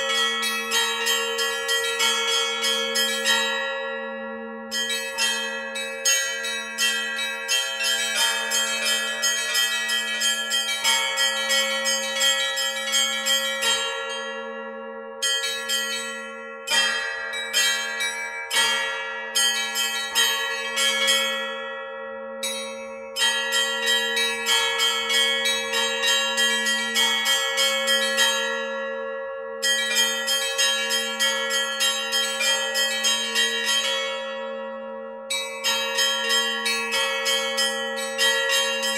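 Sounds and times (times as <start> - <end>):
small bells chiming rapidly: 0.0 - 3.9, 4.7 - 14.4, 15.2 - 21.7, 22.4 - 28.7, 29.6 - 34.3, 35.3 - 38.9
large bells humming: 0.0 - 21.8.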